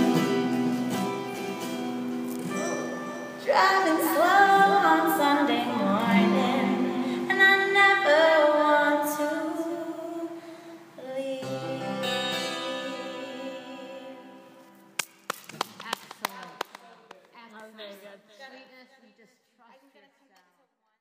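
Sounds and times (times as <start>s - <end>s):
instrumental accompaniment: 0.0s - 4.8s
woman singing: 2.5s - 10.4s, 11.0s - 14.6s.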